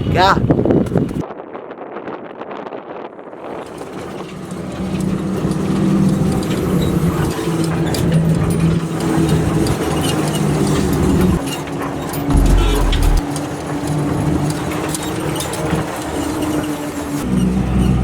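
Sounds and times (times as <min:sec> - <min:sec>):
bus engine humming: 0:03.6 - 0:14.3.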